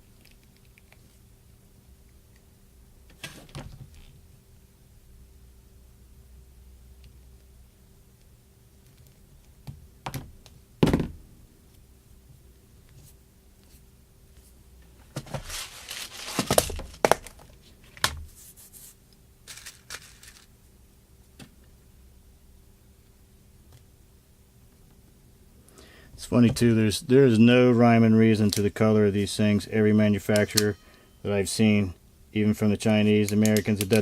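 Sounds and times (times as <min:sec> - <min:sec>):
crinkling tearing noise: 0:15.4 - 0:17.4.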